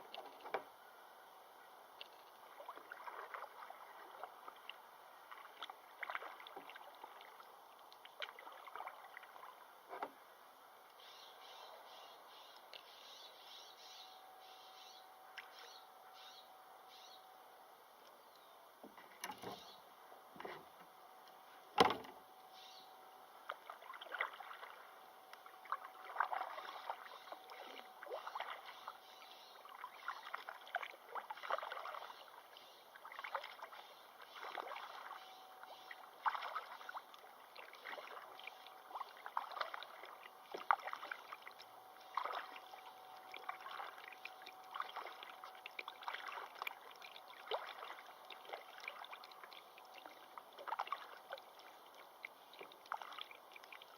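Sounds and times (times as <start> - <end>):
water splashing and sloshing: 0.0 - 0.9, 1.8 - 13.0, 15.2 - 16.1, 18.0 - 53.9.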